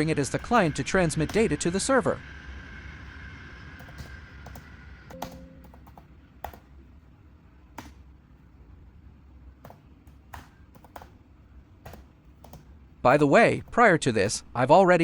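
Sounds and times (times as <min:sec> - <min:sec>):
low steady hum: 0:00.0 - 0:15.0
laptop keyboard typing: 0:03.8 - 0:06.7, 0:07.7 - 0:08.0, 0:09.6 - 0:11.2, 0:11.8 - 0:14.4.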